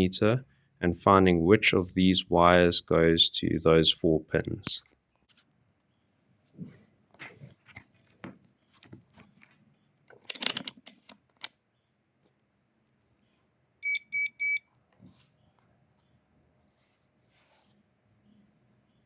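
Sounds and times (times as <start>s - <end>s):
handling clicks and rustling: 6.6s - 11.6s
multimeter beeps: 13.8s - 14.7s.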